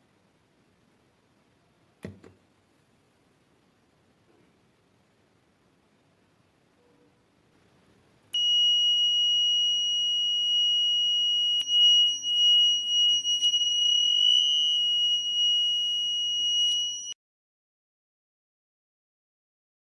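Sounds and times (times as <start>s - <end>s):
buzzer high-pitched tone: 8.4s - 17.2s.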